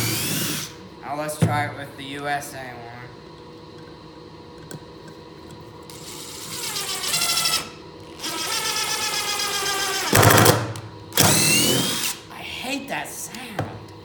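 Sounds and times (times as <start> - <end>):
impact driver whining: 0.0 - 0.8, 5.9 - 12.2.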